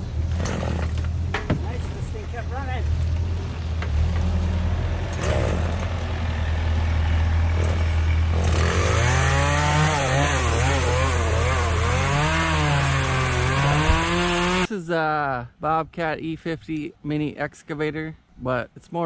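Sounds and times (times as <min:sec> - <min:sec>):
low engine hum: 0:00.0 - 0:14.7
chainsaw running: 0:07.5 - 0:14.7.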